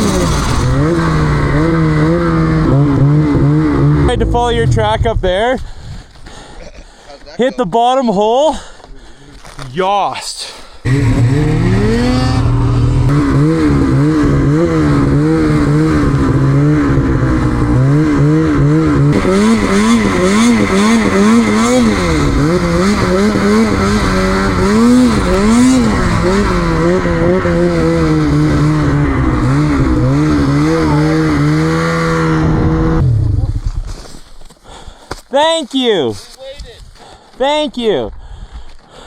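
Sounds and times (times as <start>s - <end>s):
snowmobile engine revving: 0.0s - 5.3s, 10.1s - 33.8s.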